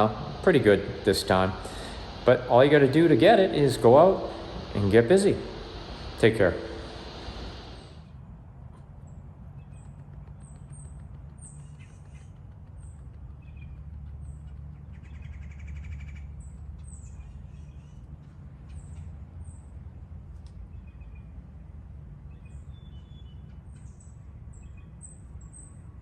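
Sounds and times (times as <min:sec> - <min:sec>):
birds chirping: 0:00.0 - 0:08.0
steady low rumble: 0:00.0 - 0:08.6.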